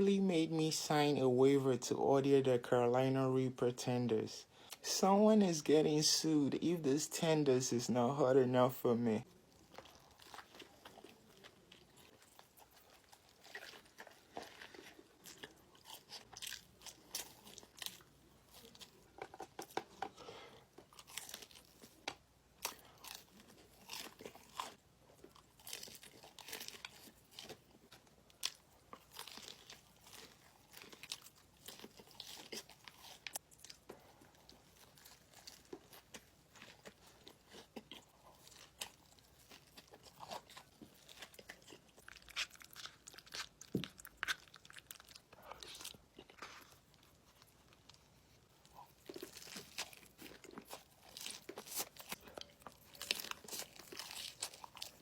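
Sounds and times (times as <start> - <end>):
crunchy chewing: 9.3 - 55.0.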